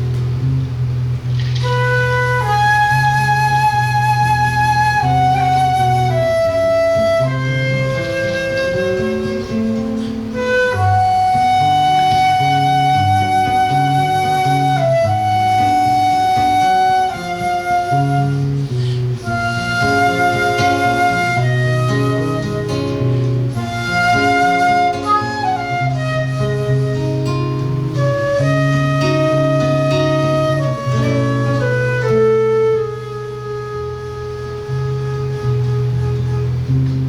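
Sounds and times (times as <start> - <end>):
plucked guitar bass and chords: 0.0 - 3.3
flute melody: 0.0 - 37.0.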